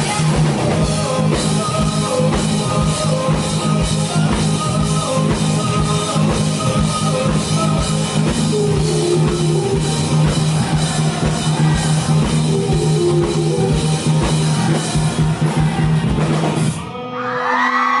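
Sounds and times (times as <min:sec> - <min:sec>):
held bass note: 0:00.0 - 0:16.6
rock band playing live: 0:00.0 - 0:18.0
crowd whooping and cheering: 0:14.4 - 0:18.0.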